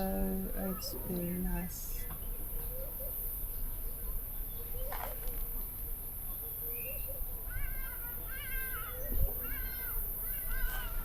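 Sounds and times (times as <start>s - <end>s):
faint bird calls: 6.3s - 11.0s.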